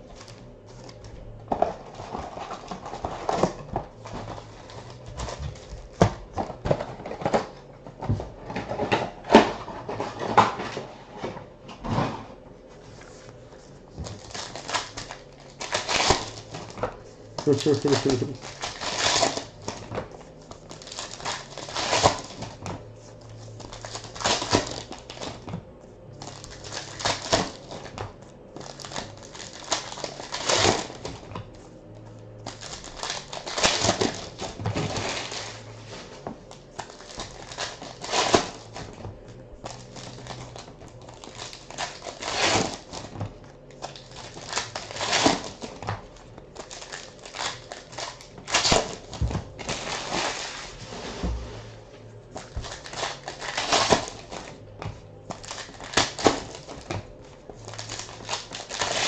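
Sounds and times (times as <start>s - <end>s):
wrapper rustling: 12.9s - 25.4s, 26.1s - 28.0s, 28.6s - 31.3s, 32.4s - 59.0s
card pack wrappers tearing: 14.0s - 25.4s, 26.1s - 28.0s, 28.6s - 31.3s, 32.4s - 50.7s, 52.3s - 54.7s, 55.3s - 59.0s.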